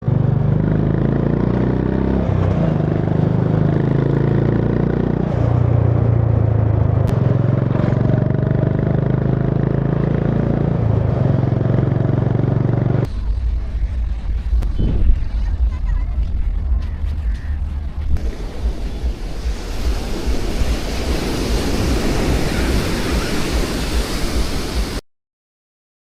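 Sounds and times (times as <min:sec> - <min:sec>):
motorcycle engine running: 0:06.2 - 0:19.6.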